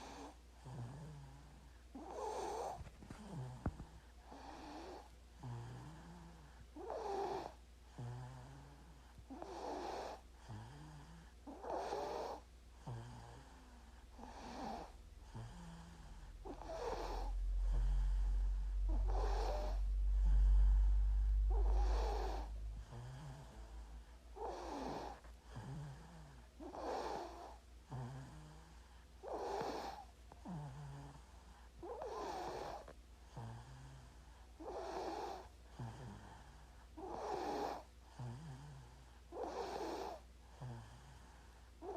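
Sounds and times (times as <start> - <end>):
baby snoring: 0.0 - 41.9
low hum: 14.9 - 24.4.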